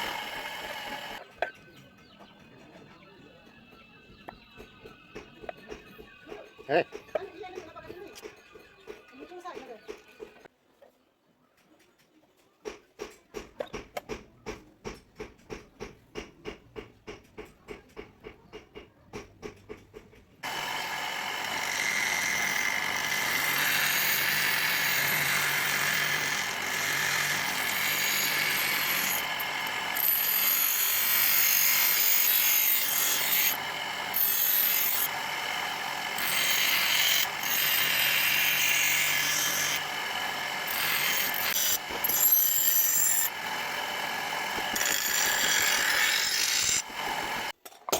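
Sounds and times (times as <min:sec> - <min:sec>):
electric grinder on steel: 0:00.0 - 0:01.2, 0:20.4 - 0:47.6
steel filed by hand: 0:20.4 - 0:47.6.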